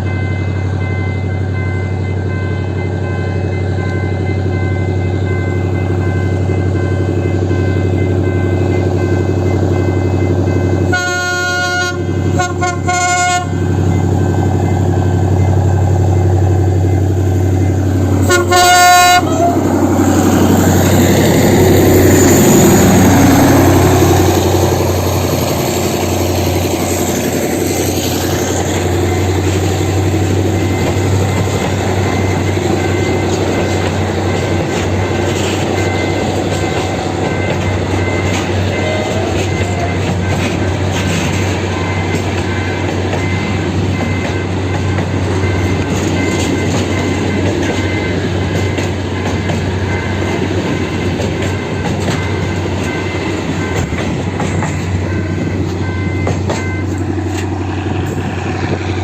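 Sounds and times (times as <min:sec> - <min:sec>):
diesel locomotive engine droning: 0:00.0 - 0:59.0
train rumbling: 0:00.0 - 0:59.0
train horn blasts: 0:10.9 - 0:13.6, 0:18.2 - 0:19.8.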